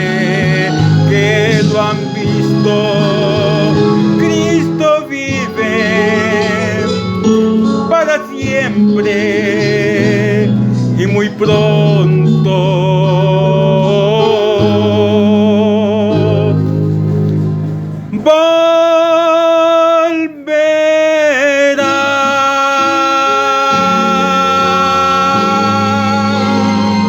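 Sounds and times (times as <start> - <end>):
steady bass line: 0.0 - 18.2
held keyboard chords: 0.0 - 20.0, 20.8 - 27.0
gospel singing with vibrato: 0.0 - 27.0.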